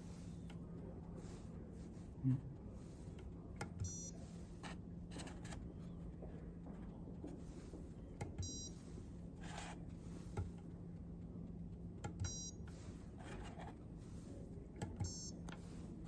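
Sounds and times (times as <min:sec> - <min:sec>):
low steady hum: 0:00.0 - 0:16.0
short electronic beeps: 0:03.8 - 0:04.2, 0:08.4 - 0:08.8, 0:12.2 - 0:12.6, 0:15.0 - 0:15.4.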